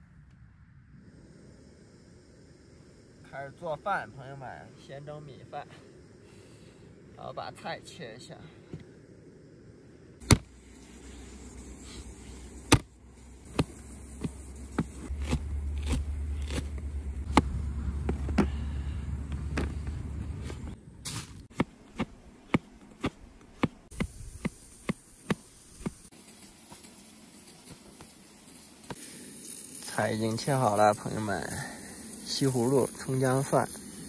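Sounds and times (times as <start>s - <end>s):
low steady rumble: 8.9s - 21.5s.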